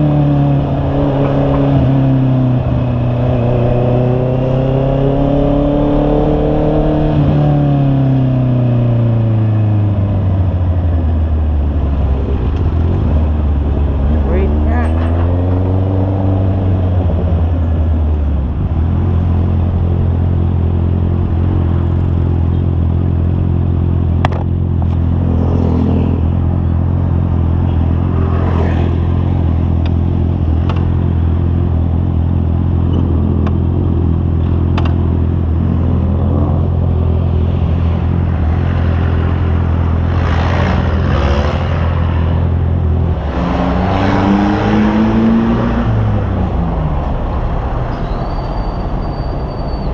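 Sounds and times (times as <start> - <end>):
motorcycle engine accelerating: 0.0 - 49.2.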